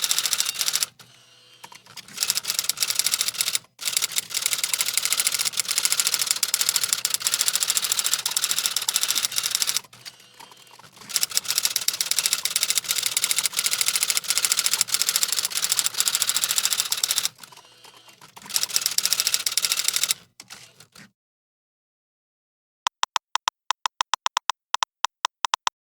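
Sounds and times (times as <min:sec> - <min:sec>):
fast typing on computer keyboard: 0:00.0 - 0:01.0, 0:01.7 - 0:20.7.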